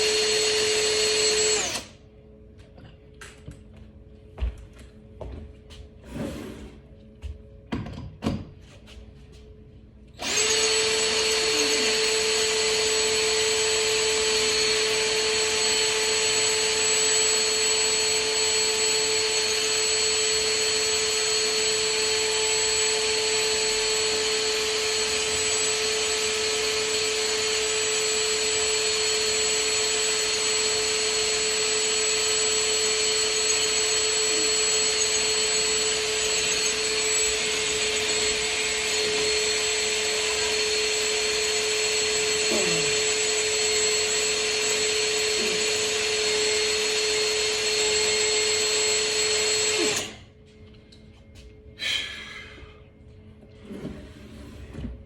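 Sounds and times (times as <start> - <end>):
electric motor whine: 0.0 - 2.0, 10.2 - 50.3.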